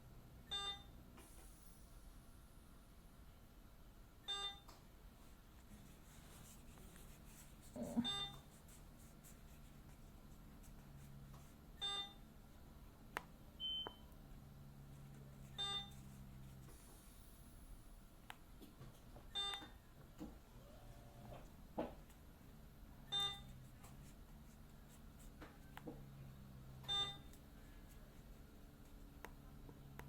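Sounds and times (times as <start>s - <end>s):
low steady hum: 0.0s - 30.0s
medical equipment beeping: 7.7s - 8.6s, 11.8s - 12.2s, 15.4s - 16.4s, 19.3s - 19.9s, 23.1s - 23.6s, 26.8s - 27.4s.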